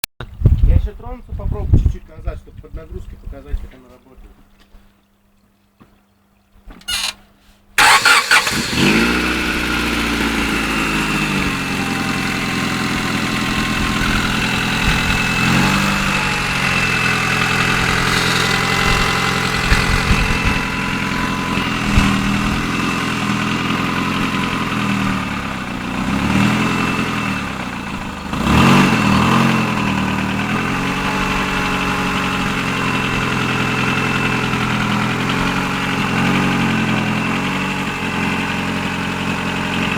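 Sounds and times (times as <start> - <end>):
car engine starting and idling: 6.9 - 7.2, 7.8 - 39.9
muffler exhaust noise: 7.8 - 37.8.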